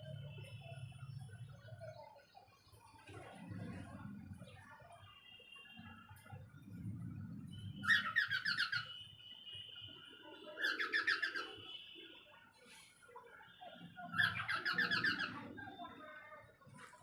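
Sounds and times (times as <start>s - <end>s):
parrots chirping: 7.7s - 9.2s, 10.5s - 11.9s, 13.6s - 16.0s.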